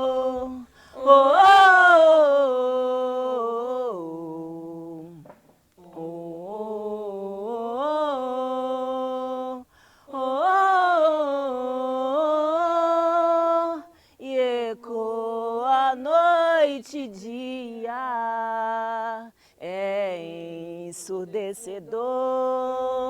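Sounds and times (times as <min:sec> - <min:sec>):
solo voice singing wordlessly: 0:00.0 - 0:23.0.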